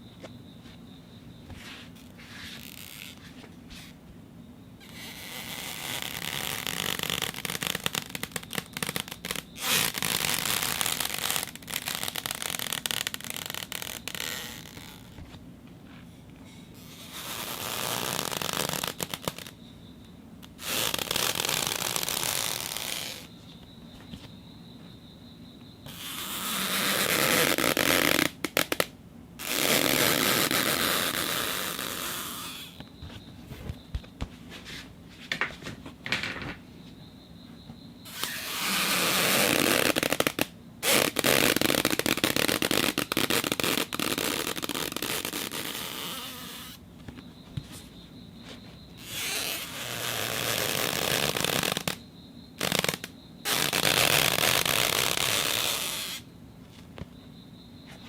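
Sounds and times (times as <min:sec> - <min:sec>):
acrylic scraping strokes: 0:01.6 - 0:03.8.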